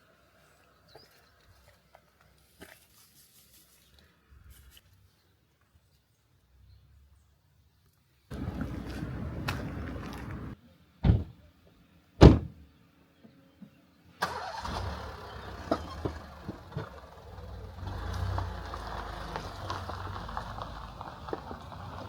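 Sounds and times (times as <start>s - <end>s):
car engine rumbling: 8.3s - 11.4s, 14.3s - 22.0s
car door thumps: 8.4s - 11.4s, 12.2s - 12.6s.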